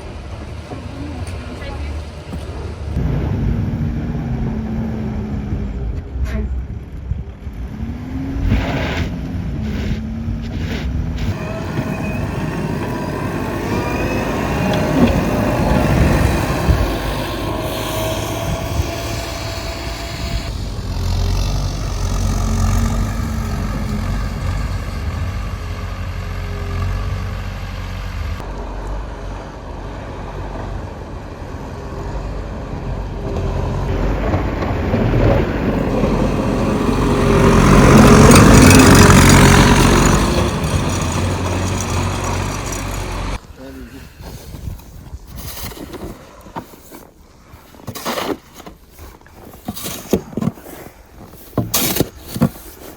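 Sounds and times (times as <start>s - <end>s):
vehicle engines passing: 0.0s - 43.5s.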